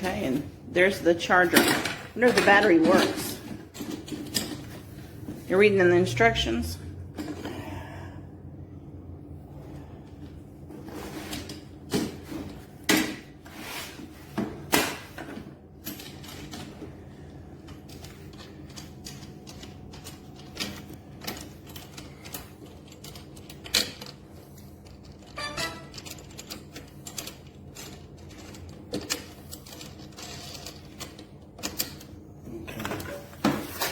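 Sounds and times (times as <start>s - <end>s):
steady low hum: 0.0s - 33.9s
parts clicking and knocking: 1.4s - 5.4s, 17.6s - 32.2s.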